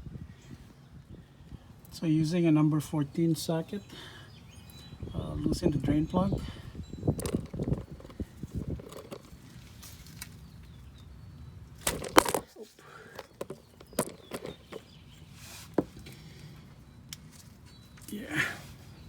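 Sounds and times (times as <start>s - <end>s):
socket wrench clicks and knocks: 7.2s - 9.3s, 13.2s - 14.8s.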